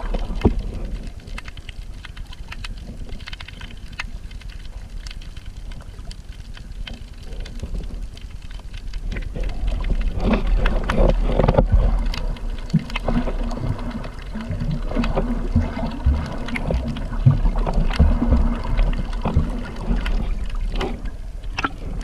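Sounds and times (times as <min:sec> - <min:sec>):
low rumble: 0:04.7 - 0:22.0.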